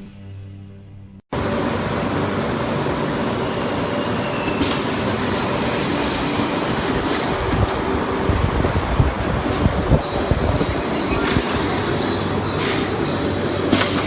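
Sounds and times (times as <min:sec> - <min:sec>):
high squeal: 0:03.0 - 0:06.6.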